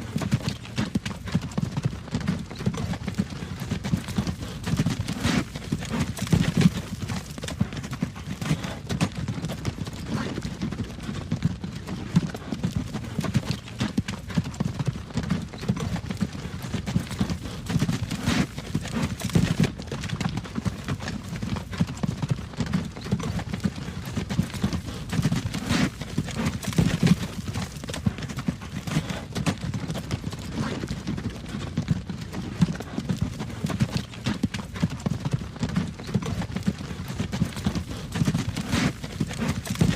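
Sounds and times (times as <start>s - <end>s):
horse hooves clip-clopping: 0.0s - 39.9s
wagon rolling rumble: 17.8s - 22.8s, 24.4s - 28.0s.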